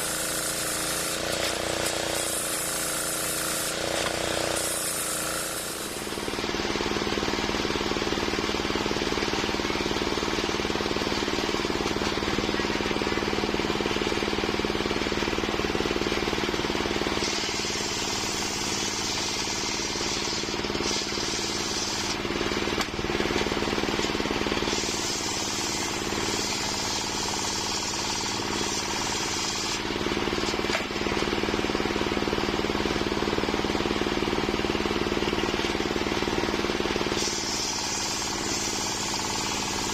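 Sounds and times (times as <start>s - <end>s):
saw blade hissing through wood: 0.0s - 6.4s, 17.1s - 22.2s, 24.4s - 29.9s, 37.1s - 39.9s
sawmill engine humming: 0.0s - 39.9s.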